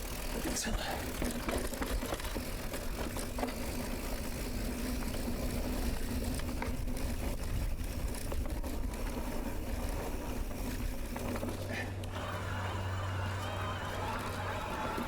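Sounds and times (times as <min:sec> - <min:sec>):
bike rumble and rattle: 0:00.0 - 0:15.0
low hum: 0:11.8 - 0:15.0.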